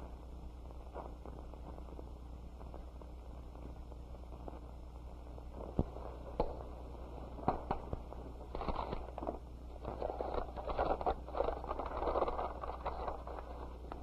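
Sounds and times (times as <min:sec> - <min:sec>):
film soundtrack hum: 0:00.0 - 0:14.0.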